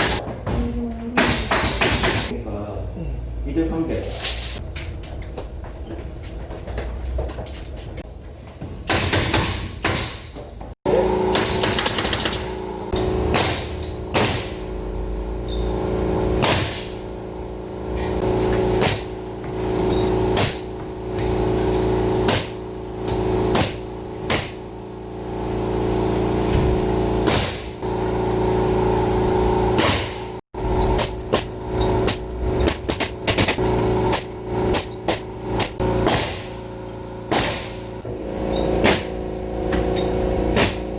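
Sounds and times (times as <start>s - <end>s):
machine hum: 10.9s - 40.9s.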